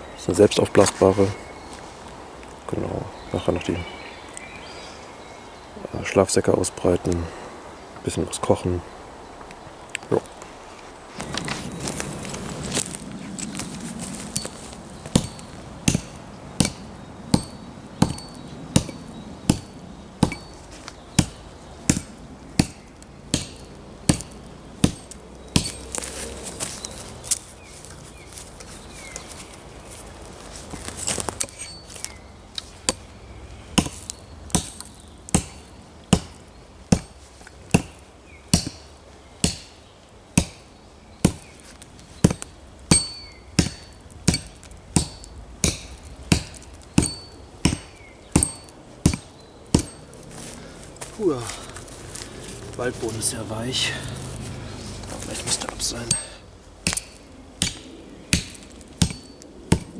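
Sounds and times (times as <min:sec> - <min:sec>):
hand tool striking wood: 0:14.2 - 0:26.9, 0:33.8 - 0:39.8, 0:40.4 - 0:50.5, 0:55.1 - 0:59.9.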